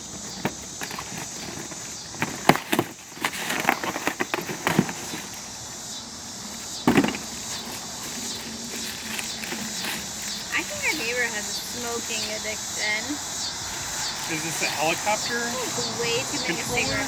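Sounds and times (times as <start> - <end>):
crickets chirping: 0.0 - 17.0
packaging rustling: 0.1 - 5.6, 6.6 - 11.2
box being torn open: 0.8 - 5.4.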